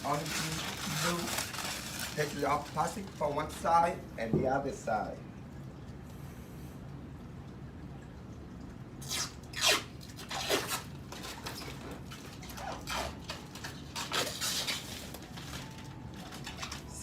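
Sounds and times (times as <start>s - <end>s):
plastic film peeling: 0.0s - 3.8s, 9.0s - 17.0s.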